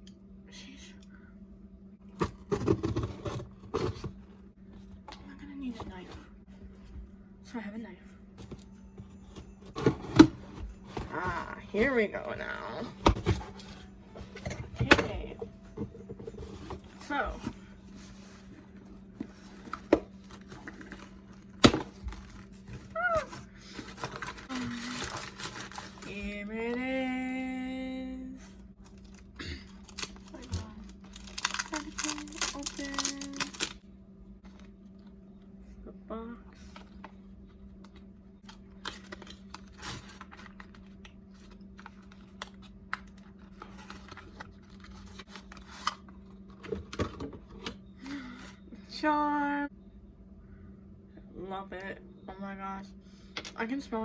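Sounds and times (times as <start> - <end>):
steady low hum: 0.0 - 54.0
cardboard packaging rustling: 8.8 - 26.2, 29.8 - 33.8.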